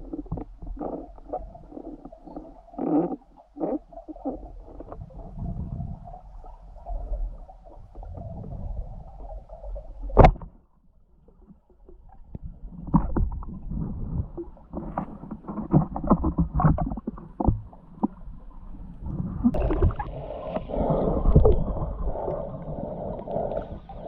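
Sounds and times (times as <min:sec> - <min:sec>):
low underwater rumble: 0:00.0 - 0:24.0.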